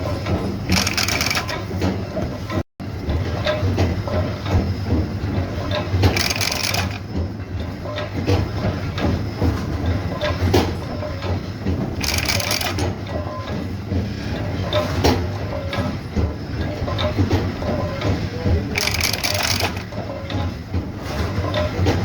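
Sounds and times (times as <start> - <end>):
clanks and knocks: 0.0 - 22.0
machinery humming: 0.0 - 22.0.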